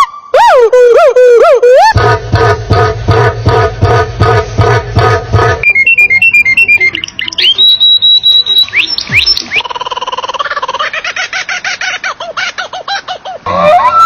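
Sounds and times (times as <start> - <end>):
fast trill of repeated notes: 1.9 - 9.6
bird-like whistled calls: 5.6 - 9.9.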